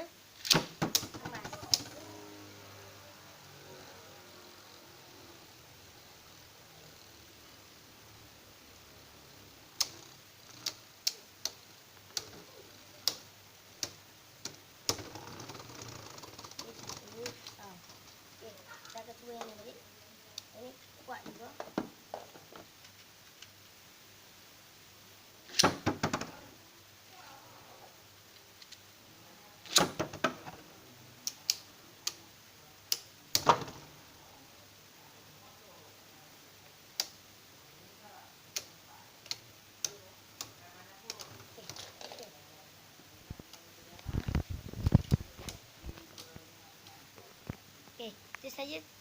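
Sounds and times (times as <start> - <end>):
plastic spinning tops knocking together: 0.4 - 2.1, 14.4 - 18.2
spinning tops clicking and knocking: 0.4 - 2.2, 9.8 - 18.3, 29.7 - 30.6.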